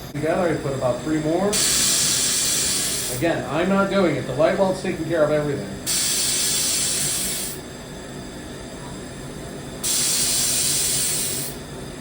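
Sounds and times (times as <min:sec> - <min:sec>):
steady low hum: 0:00.0 - 0:12.0
laser welder hissing: 0:00.2 - 0:03.5, 0:05.8 - 0:07.7, 0:09.8 - 0:11.7.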